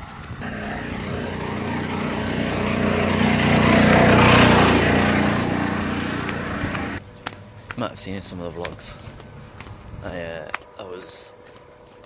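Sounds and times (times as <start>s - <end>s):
golf cart motor hum: 0.4s - 7.0s.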